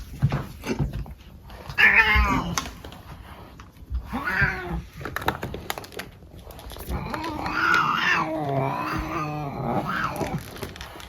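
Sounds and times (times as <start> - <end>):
cat meowing: 4.1 - 4.9, 6.9 - 10.4.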